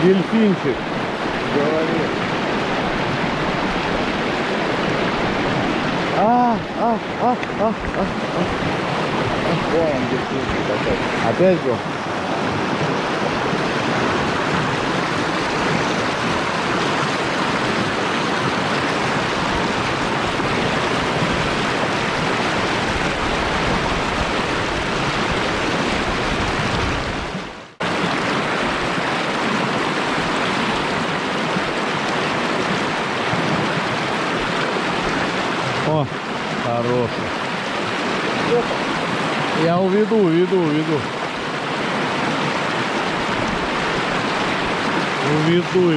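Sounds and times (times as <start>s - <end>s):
river rushing over stones: 0.0s - 45.9s.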